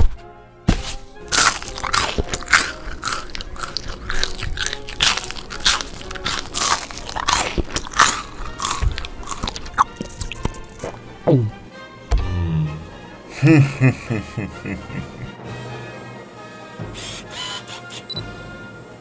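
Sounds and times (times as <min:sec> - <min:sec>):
crunchy food being chewed: 0:00.7 - 0:11.1.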